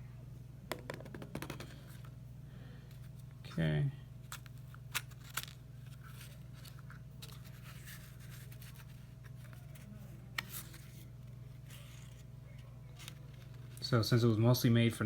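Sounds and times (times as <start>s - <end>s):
steady low hum: 0.0s - 15.0s
index cards rustling: 4.2s - 14.0s.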